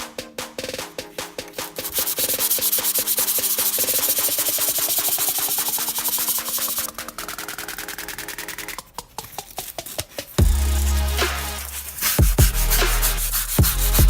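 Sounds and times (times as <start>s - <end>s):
electronic music with steady beat: 0.0s - 9.0s, 10.3s - 14.0s
sanding hiss: 1.7s - 6.9s, 9.9s - 14.0s.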